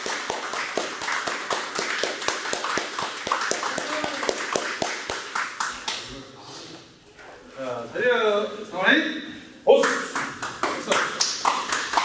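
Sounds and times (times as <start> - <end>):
small group clapping: 0.0 - 6.3, 9.7 - 12.0
voices in a room: 0.5 - 12.0.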